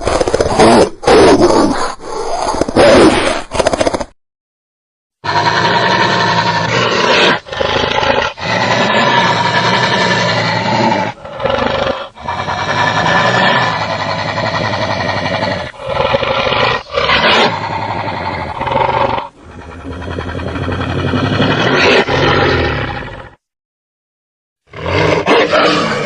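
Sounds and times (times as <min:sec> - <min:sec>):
creature roaring: 0:05.2 - 0:23.4, 0:24.7 - 0:26.0.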